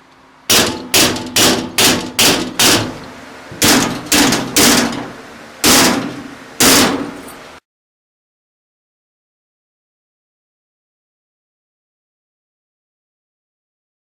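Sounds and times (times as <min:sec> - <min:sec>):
hammer striking metal punch: 0:00.5 - 0:07.4.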